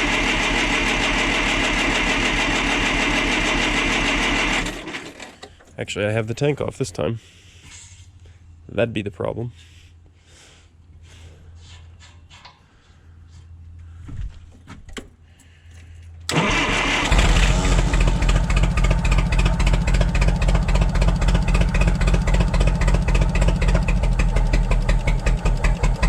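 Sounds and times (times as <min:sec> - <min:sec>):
engine running: 0:00.0 - 0:05.4, 0:16.0 - 0:26.0
engine cranked by starter: 0:00.0 - 0:05.8, 0:16.2 - 0:26.0.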